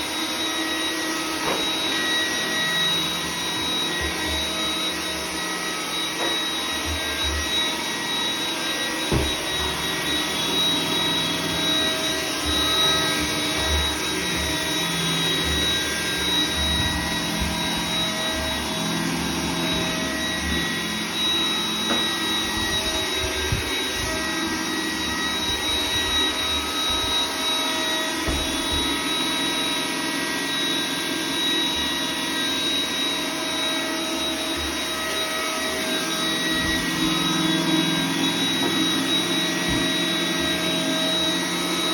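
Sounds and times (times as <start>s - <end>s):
robot vacuum whining: 0.0s - 41.9s.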